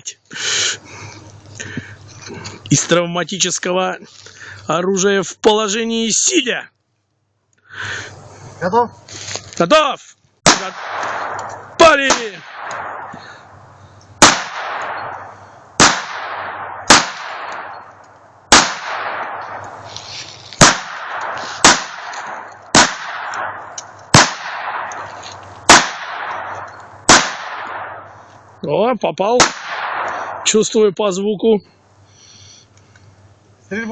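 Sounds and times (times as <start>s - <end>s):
pistol shots with echo: 10.4s - 13.1s, 14.2s - 17.9s, 18.5s - 19.8s, 20.6s - 28.1s, 29.4s - 30.5s.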